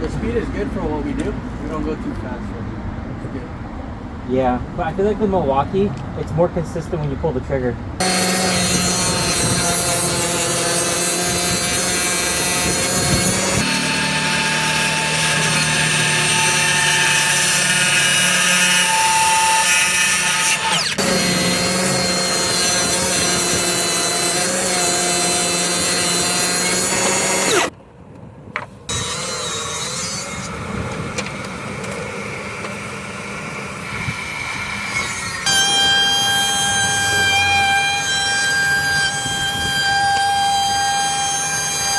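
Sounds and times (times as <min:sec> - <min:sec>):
power saw cutting wood: 0:08.0 - 0:27.7, 0:28.9 - 0:41.9.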